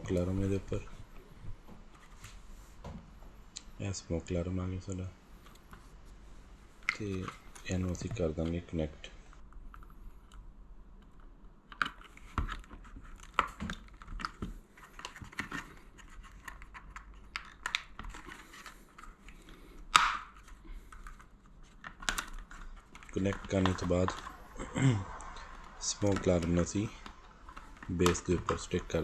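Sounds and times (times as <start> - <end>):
plastic clicks and scrapes: 11.0 - 24.5, 25.2 - 29.0.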